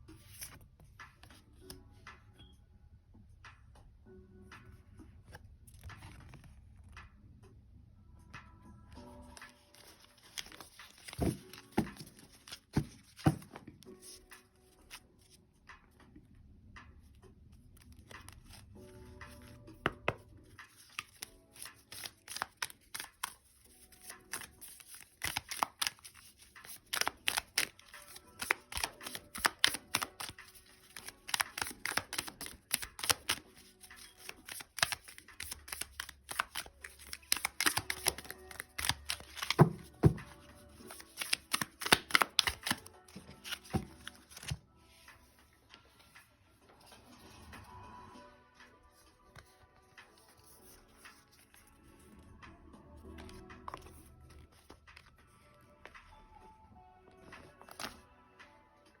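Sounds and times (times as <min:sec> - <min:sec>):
soft background music: 0:00.0 - 0:59.0
cards shuffled by hand: 0:00.1 - 0:01.7, 0:05.3 - 0:07.0, 0:09.2 - 0:15.0, 0:19.3 - 0:45.1, 0:57.3 - 0:58.0.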